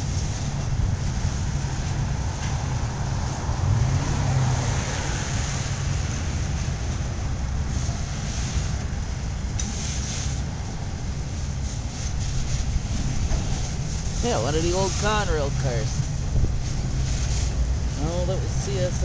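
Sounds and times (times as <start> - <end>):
steel wheels rumbling on rails: 0.0 - 19.0
hiss: 9.6 - 10.5.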